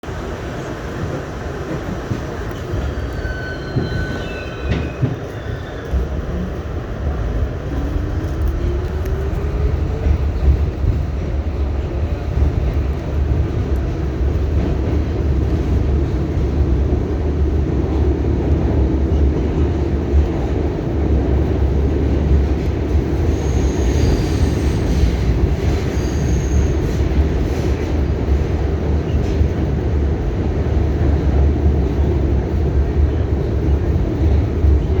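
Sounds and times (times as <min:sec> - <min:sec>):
subway train wheels rumbling: 0:00.0 - 0:35.0
high wheel squeals: 0:02.8 - 0:06.3.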